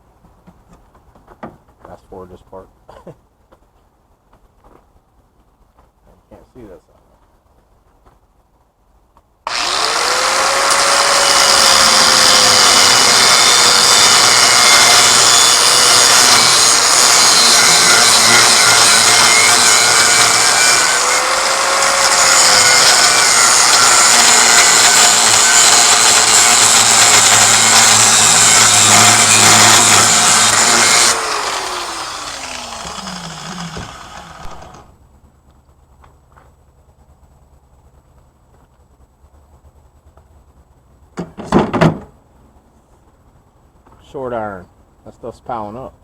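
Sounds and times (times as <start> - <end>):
power tool cutting metal: 9.5 - 34.9.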